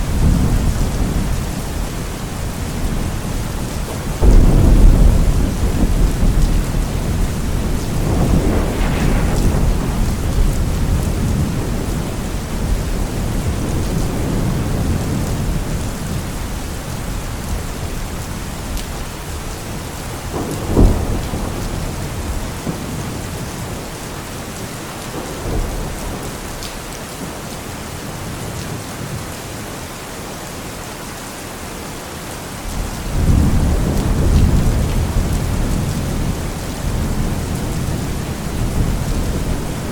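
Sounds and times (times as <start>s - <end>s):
rolling thunder rumbles: 0.0s - 26.6s, 32.7s - 39.9s
steady rain: 0.0s - 39.9s
sharp thunder crack: 4.2s - 12.8s.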